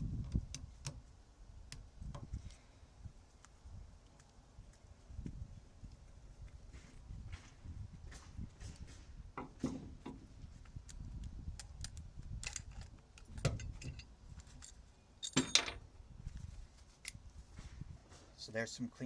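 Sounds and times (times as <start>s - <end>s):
metal tools clinking and knocking: 12.4s - 15.8s.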